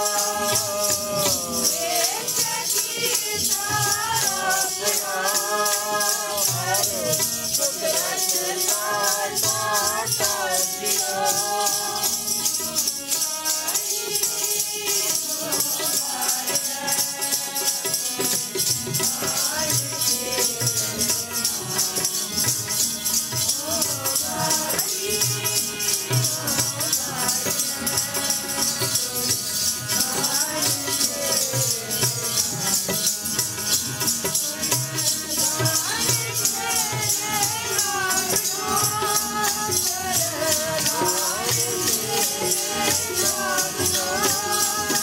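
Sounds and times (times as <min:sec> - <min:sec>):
devotional singing voices: 0:00.0 - 0:45.0
rattling hand percussion: 0:00.0 - 0:45.0.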